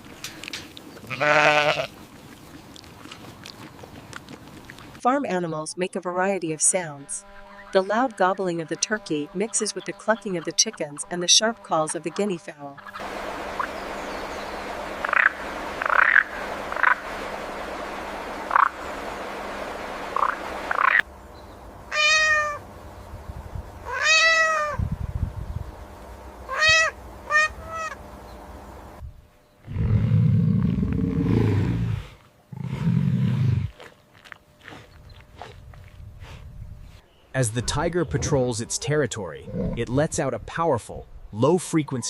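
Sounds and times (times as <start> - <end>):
rising and falling animal calls: 12.8 - 21.0, 21.9 - 22.6, 23.8 - 24.8, 26.4 - 28.2, 37.3 - 39.9
steady hiss: 12.9 - 29.0
low rough animal sounds: 29.6 - 35.9, 37.4 - 40.1.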